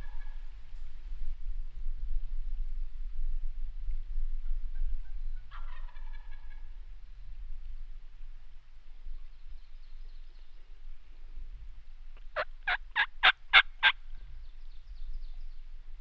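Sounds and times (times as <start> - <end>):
turkey yelping: 12.4 - 14.0.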